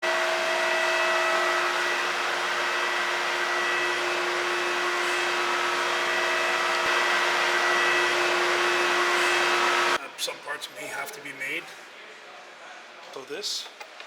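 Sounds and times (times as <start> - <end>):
blower machine rushing: 0.0 - 10.0.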